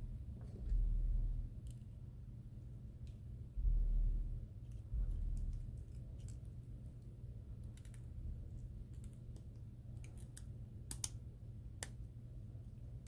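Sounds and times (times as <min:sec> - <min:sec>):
dull low thuds: 0:00.0 - 0:01.5, 0:03.5 - 0:05.6.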